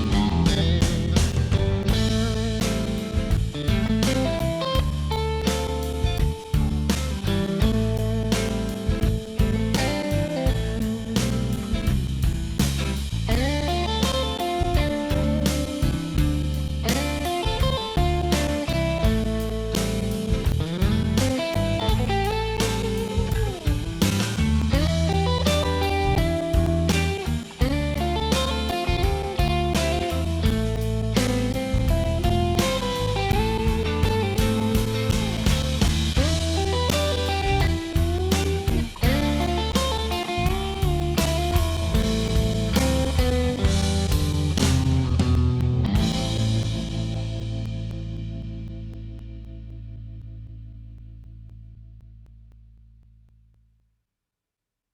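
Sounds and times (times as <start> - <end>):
blues electric guitar lead: 0.0 - 51.9
bass and drum beat: 0.0 - 52.3.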